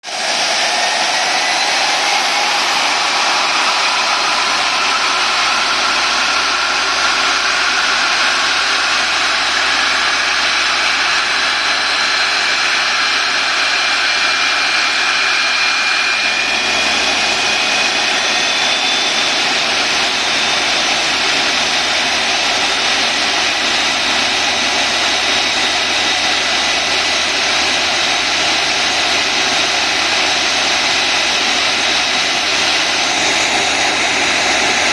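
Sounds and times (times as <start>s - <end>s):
jet engine turbine roar: 0.0s - 34.9s.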